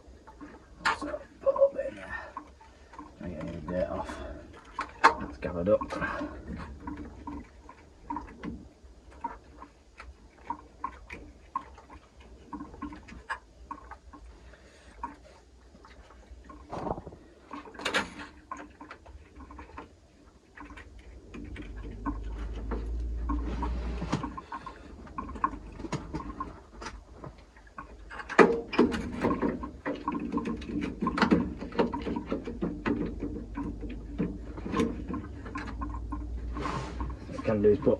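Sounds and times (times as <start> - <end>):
low rumble: 16.7 - 17.4.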